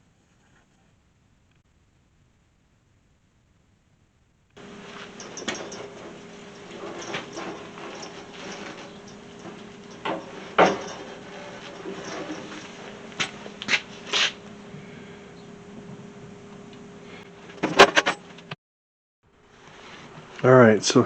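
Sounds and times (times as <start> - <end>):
steady low hum: 0.0 - 18.6
knocks and clatters: 4.6 - 14.7, 17.4 - 18.6.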